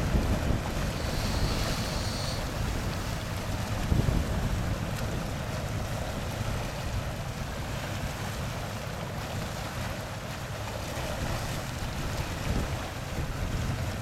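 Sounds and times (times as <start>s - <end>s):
wind on microphone: 0.0s - 7.8s, 10.9s - 14.0s
boat engine rumble: 0.0s - 14.0s
water rushing past hull: 0.0s - 14.0s.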